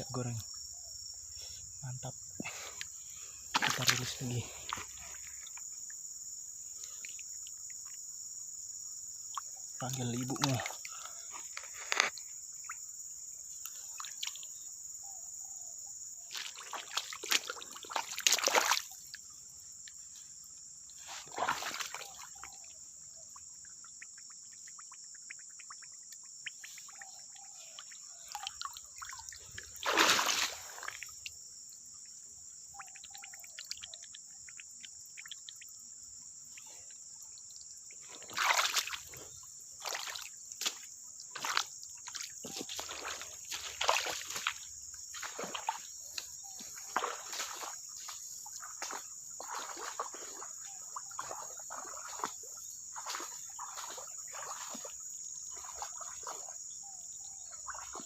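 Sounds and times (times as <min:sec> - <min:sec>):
high-pitched insect drone: 0:00.0 - 0:58.0
loud water splashes: 0:21.2 - 0:22.2, 0:29.8 - 0:31.0, 0:38.3 - 0:39.1.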